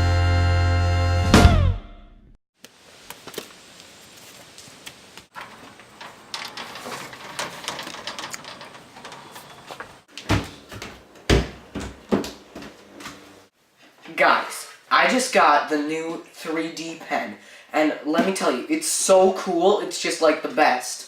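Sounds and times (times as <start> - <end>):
clicks and knocks: 5.3 - 13.2
heavy thumps: 5.4 - 12.8.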